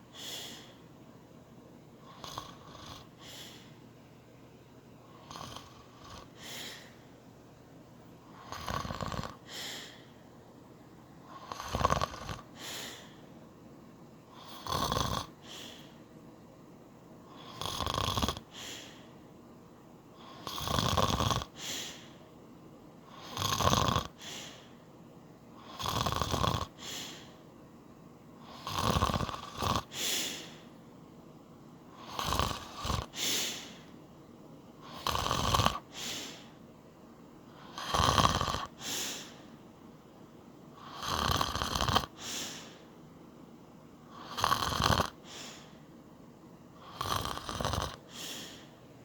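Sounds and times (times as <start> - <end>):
man snoring: 2.0 - 3.7, 5.1 - 7.0, 8.4 - 10.0, 11.3 - 13.2, 14.3 - 15.9, 17.3 - 19.0, 20.2 - 22.0, 23.1 - 24.6, 25.6 - 27.3, 28.4 - 30.6, 31.9 - 33.8, 34.8 - 36.4, 37.6 - 39.4, 40.8 - 42.8, 44.1 - 45.7, 46.8 - 48.7.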